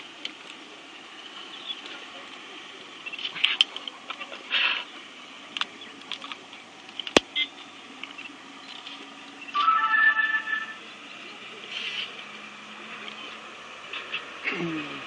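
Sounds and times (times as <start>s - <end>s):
steady high tones: 9.5s - 11.1s.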